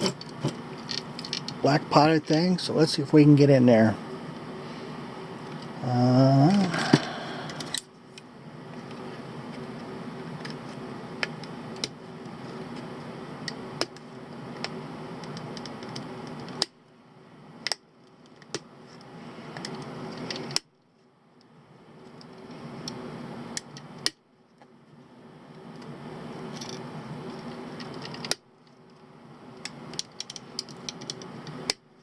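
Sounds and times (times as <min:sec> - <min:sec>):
steady low hum: 0:00.0 - 0:32.0
murmured voice: 0:05.8 - 0:07.6.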